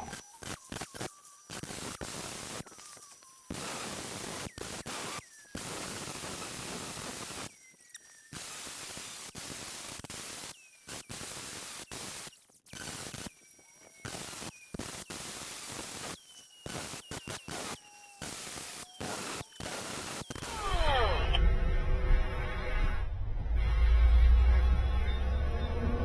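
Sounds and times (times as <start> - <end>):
short falling whistle: 20.4 - 21.5.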